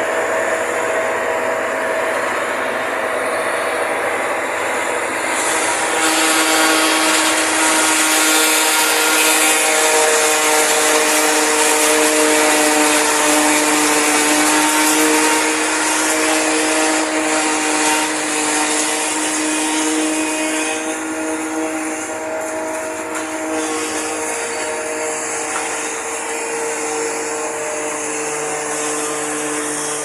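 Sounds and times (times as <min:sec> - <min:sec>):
forage harvester chopping maize: 0:05.2 - 0:28.4.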